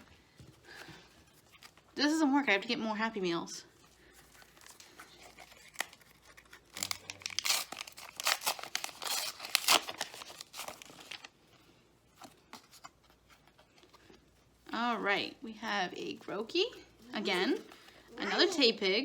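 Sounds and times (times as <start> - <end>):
wrapper tearing and crinkling: 4.3 - 11.4.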